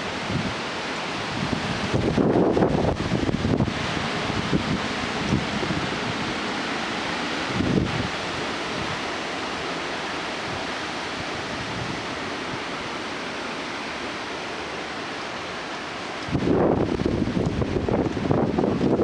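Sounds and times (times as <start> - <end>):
wind buffeting microphone: 0.0 - 9.2, 10.3 - 12.9, 16.0 - 19.0
wind rushing through trees: 0.0 - 19.0.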